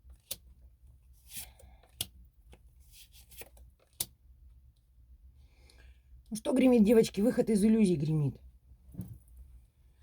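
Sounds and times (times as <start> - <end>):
cards rustling: 0.0 - 4.2.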